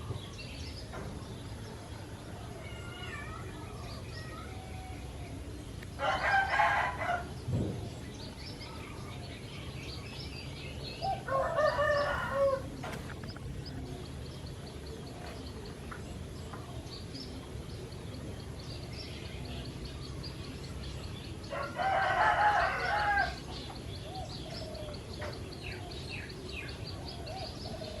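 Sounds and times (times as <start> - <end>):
small birds chirping faintly: 0.0 - 28.0
rooster crowing: 6.0 - 7.3, 11.3 - 12.7, 21.5 - 23.4.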